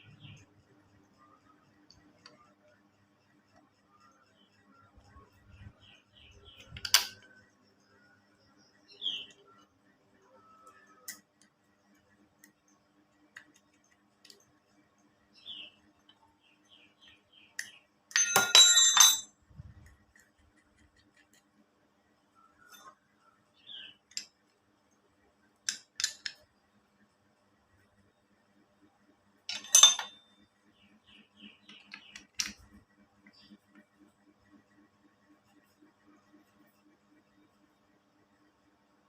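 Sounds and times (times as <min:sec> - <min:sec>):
small metal parts and tools clinking: 0:06.6 - 0:07.5, 0:17.6 - 0:21.4, 0:25.6 - 0:26.5, 0:29.4 - 0:30.5, 0:31.7 - 0:32.8
ringing metallic clatter: 0:18.1 - 0:19.3, 0:29.5 - 0:30.3.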